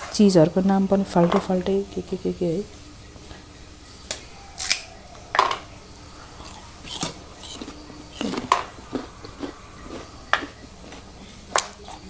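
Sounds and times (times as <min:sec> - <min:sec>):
crisp bites and chewing of pear: 0:06.0 - 0:11.8.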